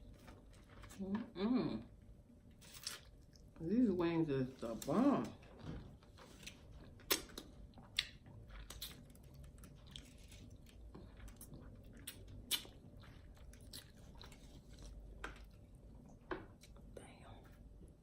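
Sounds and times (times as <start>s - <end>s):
person chewing crispy chicken: 2.6s - 3.5s, 5.4s - 15.8s.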